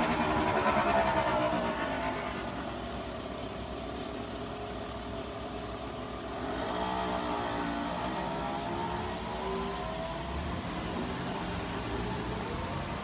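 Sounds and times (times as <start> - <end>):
outdoor background noise: 0.0 - 13.0.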